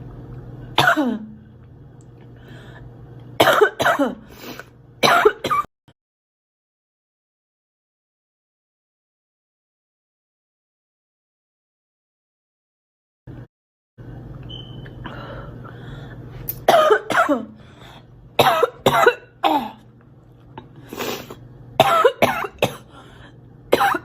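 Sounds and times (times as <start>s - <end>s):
steady low hum: 0.0s - 5.7s, 14.0s - 24.0s
girl coughing: 0.8s - 1.4s, 3.4s - 4.3s, 5.0s - 5.7s, 16.6s - 17.6s, 18.4s - 19.8s, 21.8s - 22.9s, 23.7s - 24.0s.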